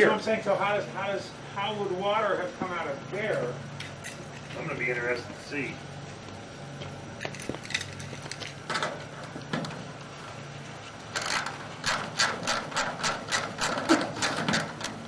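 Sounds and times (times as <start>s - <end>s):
cable reel ratcheting clicks: 11.1s - 15.0s.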